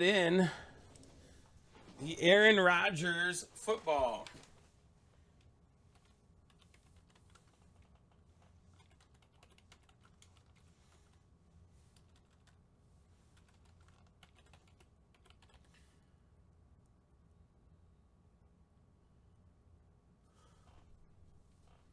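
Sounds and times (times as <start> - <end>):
faint keyboard typing: 0.0 - 4.6, 5.3 - 16.1.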